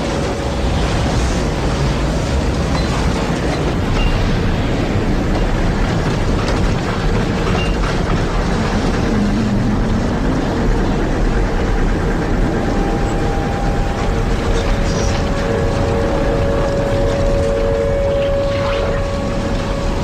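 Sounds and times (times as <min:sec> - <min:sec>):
loud rumbling wind: 0:00.0 - 0:20.0.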